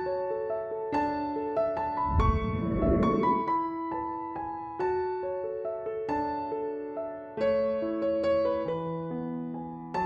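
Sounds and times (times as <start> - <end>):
gentle piano melody: 0.0 - 10.0
low rumbling noise: 2.0 - 3.7.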